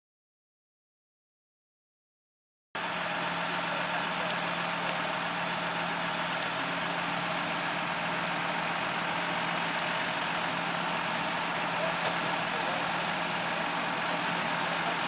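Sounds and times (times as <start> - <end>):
heavy diesel machinery running: 2.8 - 15.0.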